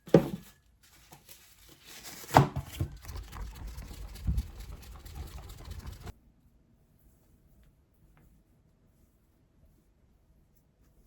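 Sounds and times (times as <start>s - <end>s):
rustling: 0.4s - 6.1s
low bumps: 2.8s - 6.1s.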